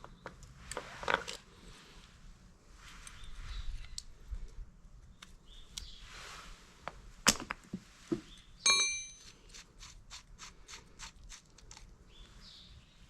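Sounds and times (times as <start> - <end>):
metal piece ringing: 8.6 - 9.4
metal tools knocking and clinking: 8.7 - 9.4.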